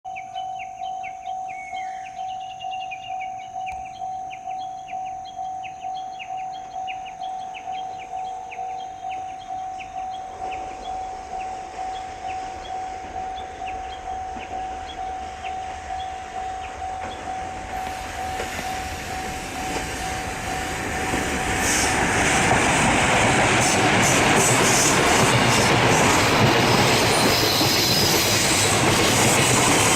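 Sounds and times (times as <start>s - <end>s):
level-crossing alarm bell ringing: 0.1s - 22.0s
freight train passing: 0.1s - 29.9s
train wheels clacking on rail joints: 9.8s - 29.9s.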